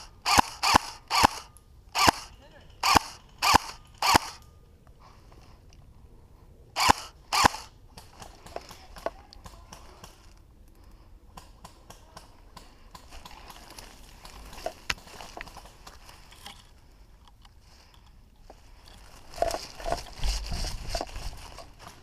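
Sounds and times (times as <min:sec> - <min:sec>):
airsoft gun shots: 0:00.3 - 0:04.4.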